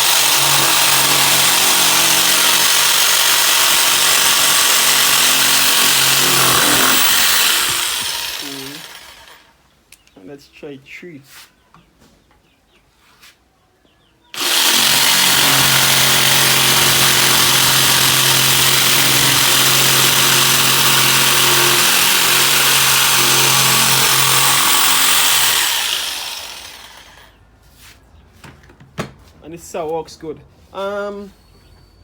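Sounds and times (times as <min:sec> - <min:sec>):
electric jigsaw cutting: 0:00.0 - 0:09.5, 0:14.4 - 0:27.3.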